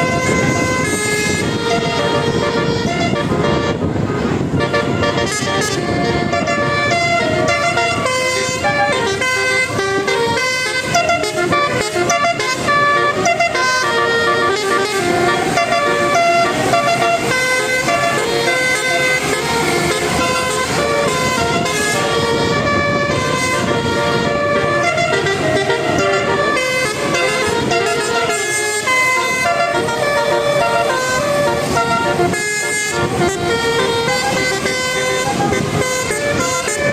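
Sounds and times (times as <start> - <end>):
tuned air horns playing a melody: 0.0 - 36.9.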